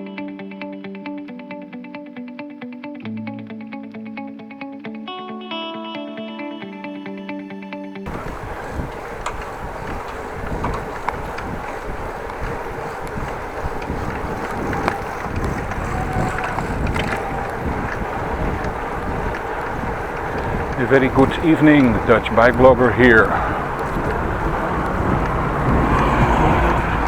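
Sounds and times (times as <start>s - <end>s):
road noise: 8.1s - 27.0s
small clicks and rattles: 8.1s - 27.0s
wind buffeting microphone: 8.1s - 27.0s.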